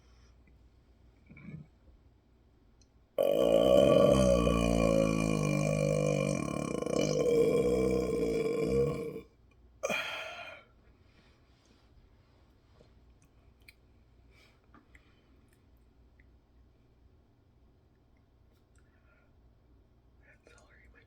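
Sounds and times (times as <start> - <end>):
person burping loudly: 3.2 - 10.3.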